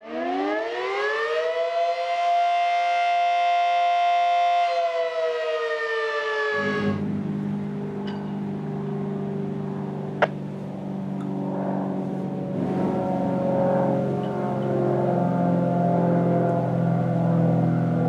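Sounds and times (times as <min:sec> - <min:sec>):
low steady drone: 0:00.0 - 0:18.0.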